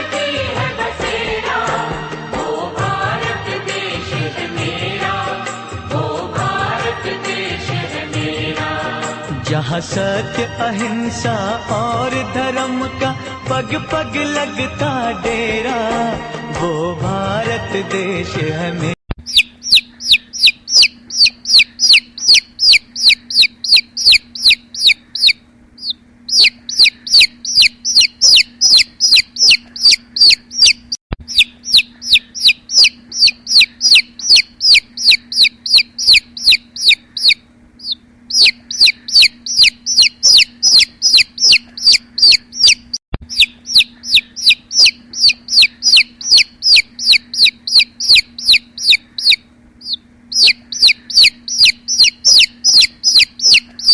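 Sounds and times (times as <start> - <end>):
bird calling in high-pitched notes: 19.2 - 53.9
faint steady hum: 19.2 - 53.9.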